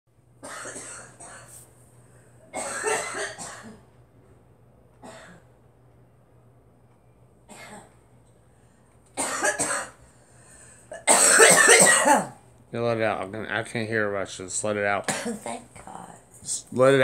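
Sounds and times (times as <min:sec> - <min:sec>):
girl coughing: 0:00.4 - 0:01.6, 0:02.5 - 0:03.9, 0:05.0 - 0:05.5, 0:09.2 - 0:10.0, 0:10.9 - 0:12.4, 0:15.1 - 0:15.7.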